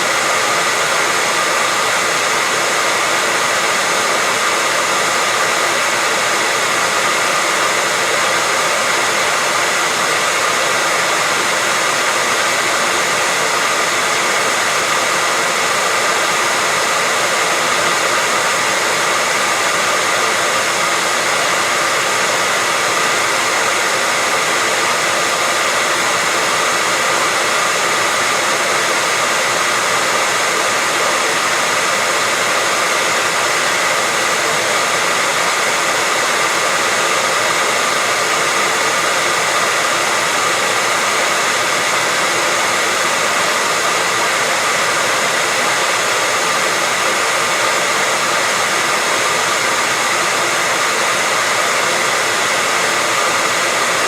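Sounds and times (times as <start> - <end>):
hair dryer running: 0.0 - 54.0.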